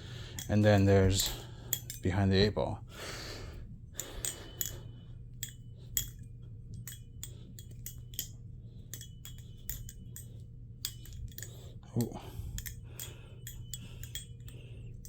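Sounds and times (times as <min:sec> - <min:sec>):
butterfly knife clicking: 0:06.8 - 0:14.6.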